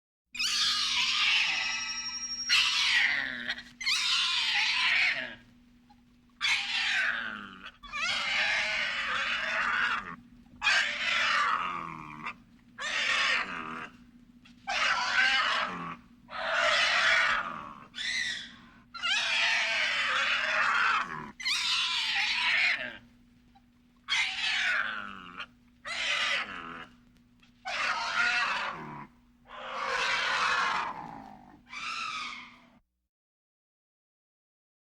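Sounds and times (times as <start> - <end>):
faint steady hum: 0.4 - 32.8
raspy monster roars: 27.8 - 31.6.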